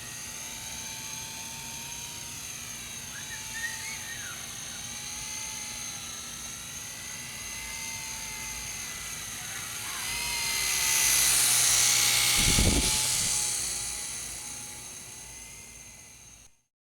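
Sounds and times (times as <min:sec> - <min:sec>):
toy helicopter rotors whining: 0:00.0 - 0:16.5.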